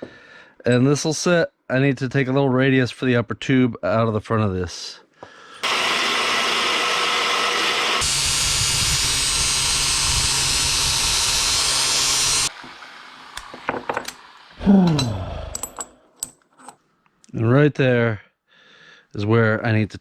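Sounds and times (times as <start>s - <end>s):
power tool cutting metal: 5.6s - 14.5s
motor spinning down: 5.6s - 14.6s.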